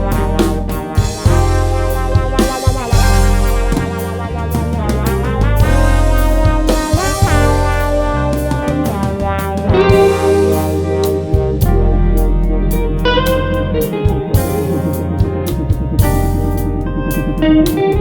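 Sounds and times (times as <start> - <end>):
instrumental band music: 0.0 - 18.0
lead guitar with bent notes: 0.0 - 18.0.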